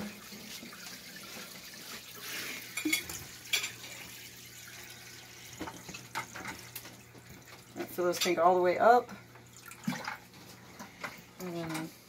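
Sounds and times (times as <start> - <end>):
water pouring into aquarium: 0.0 - 7.8, 9.4 - 10.4.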